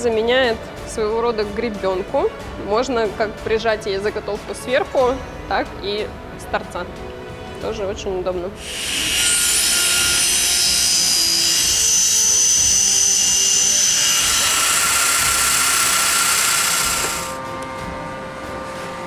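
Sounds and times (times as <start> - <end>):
background music: 0.0 - 19.0
woodworking machine cutting wood: 8.6 - 17.4.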